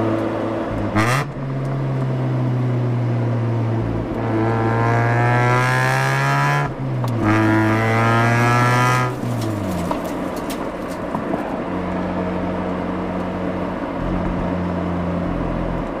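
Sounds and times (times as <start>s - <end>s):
rotary engine exhaust accelerating: 0.0s - 16.0s.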